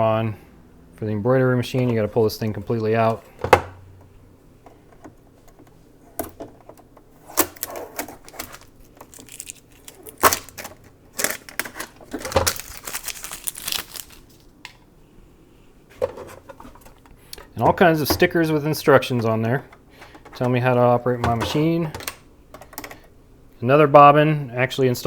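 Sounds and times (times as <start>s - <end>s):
plastic parts clicking and knocking: 3.0s - 4.1s, 4.7s - 12.8s, 19.4s - 23.1s
plastic packaging crinkling: 7.3s - 14.6s.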